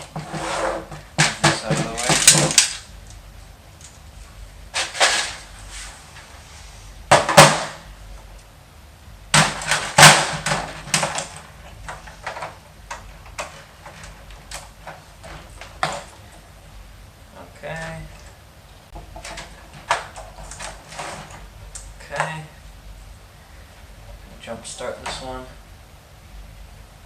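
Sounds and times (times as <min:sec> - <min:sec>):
computer parts knocking and clunking: 0:00.0 - 0:02.9, 0:07.1 - 0:07.9, 0:09.3 - 0:16.4, 0:17.7 - 0:22.4.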